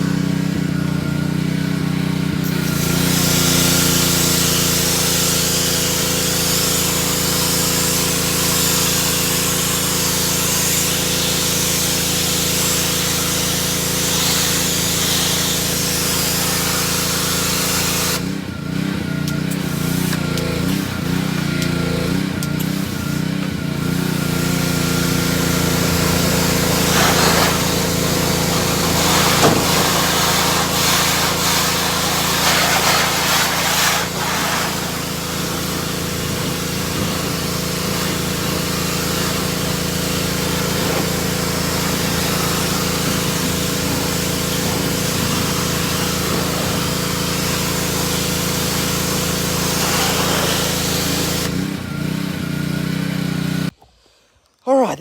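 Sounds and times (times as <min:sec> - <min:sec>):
small engine running: 0:00.0 - 0:54.9
water jet spraying hiss: 0:02.4 - 0:18.4, 0:24.0 - 0:51.8.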